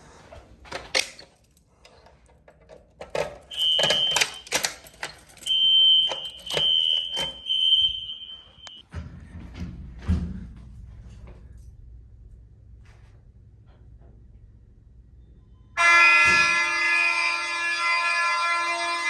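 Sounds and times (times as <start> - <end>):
fire alarm electronic tone: 3.5 - 8.8, 15.6 - 19.0.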